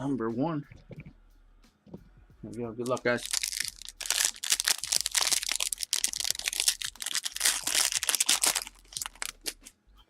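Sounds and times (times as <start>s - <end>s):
wrapper tearing and crinkling: 2.9s - 9.7s.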